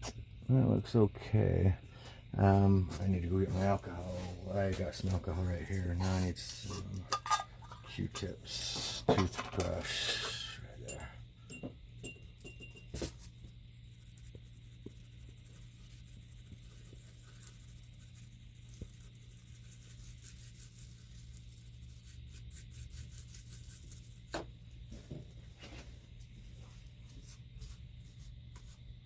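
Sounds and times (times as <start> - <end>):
low electrical hum: 0.0 - 29.0
toothbrush scratchy brushing: 3.0 - 7.0, 13.7 - 24.3.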